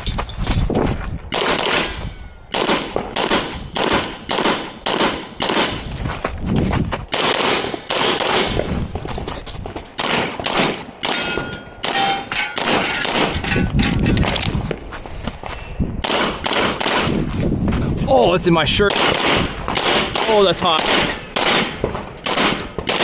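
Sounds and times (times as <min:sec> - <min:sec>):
pistol shots: 0:01.3 - 0:05.9, 0:07.1 - 0:08.7, 0:10.0 - 0:13.4, 0:16.0 - 0:17.1, 0:18.9 - 0:23.0
steel targets ringing: 0:11.1 - 0:13.2.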